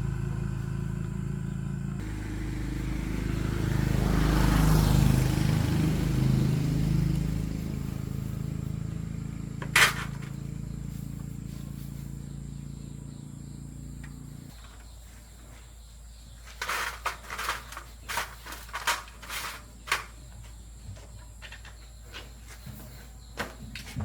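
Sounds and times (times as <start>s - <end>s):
small electric motor humming: 0.0s - 14.5s.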